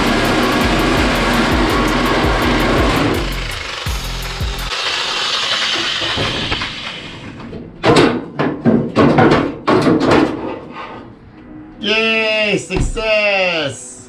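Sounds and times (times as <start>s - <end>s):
reciprocating saw cutting metal: 0.0s - 7.4s
loud metal knocks and clanks: 7.5s - 10.6s.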